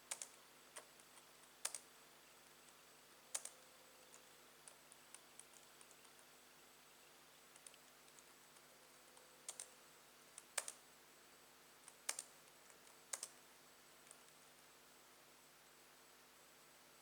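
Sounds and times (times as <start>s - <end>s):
keyboard key clicks: 10.4s - 10.8s.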